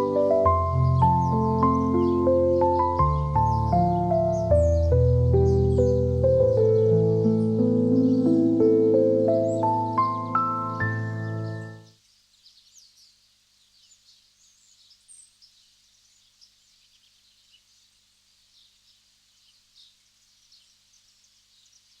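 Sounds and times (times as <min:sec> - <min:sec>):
background music: 0:00.0 - 0:11.9
small birds chirping: 0:00.0 - 0:22.0.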